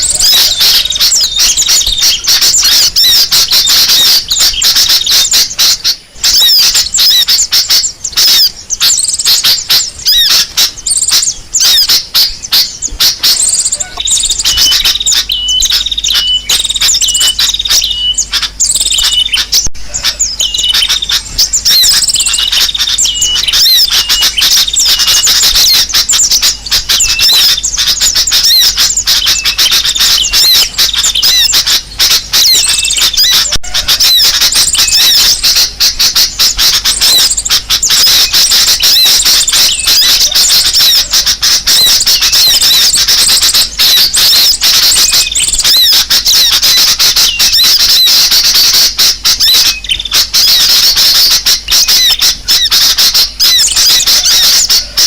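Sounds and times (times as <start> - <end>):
small birds chirping chorus: 0.0 - 55.0.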